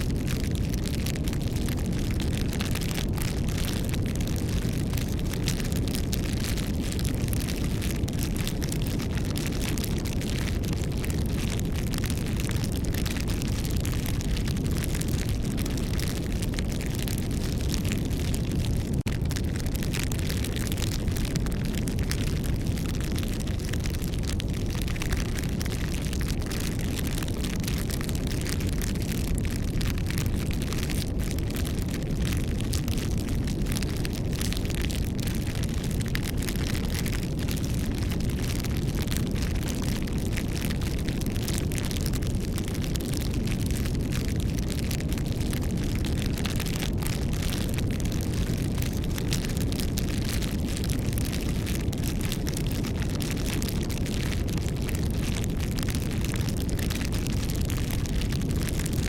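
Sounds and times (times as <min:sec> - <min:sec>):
low rush of flames: 0:00.0 - 0:59.0
wood crackling and popping: 0:00.0 - 0:59.0.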